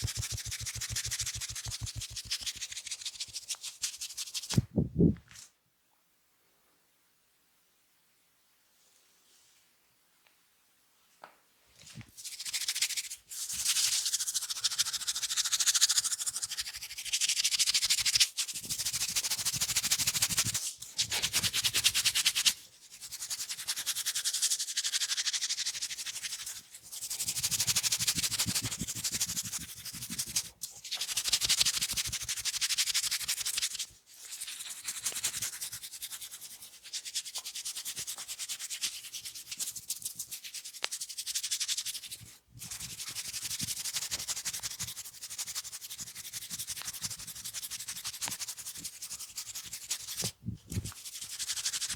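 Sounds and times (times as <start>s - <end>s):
fingers scratching hair: 0.0s - 5.2s.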